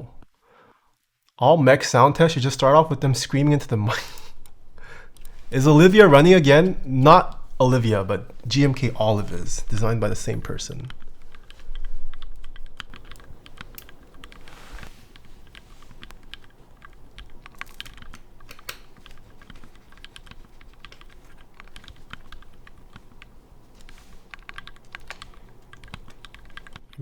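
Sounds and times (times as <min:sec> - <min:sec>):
mechanical keyboard key clacks: 0:15.1 - 0:27.0.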